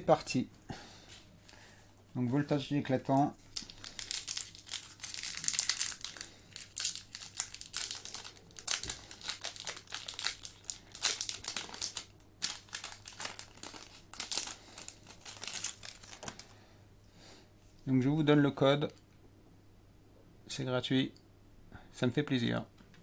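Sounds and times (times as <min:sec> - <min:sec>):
foil wrapper crinkling: 0:03.1 - 0:16.6.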